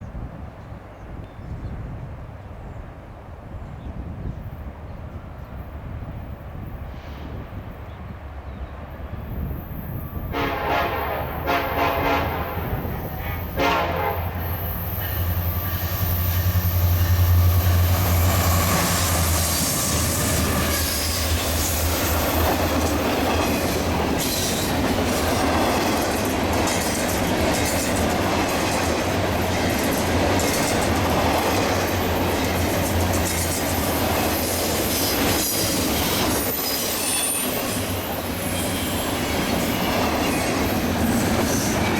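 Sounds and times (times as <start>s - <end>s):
locomotive engines droning: 8.2s - 41.9s
train horn blasts: 10.3s - 15.8s
freight cars rumbling: 10.9s - 41.9s
wheels clacking over rail joints: 14.9s - 41.9s.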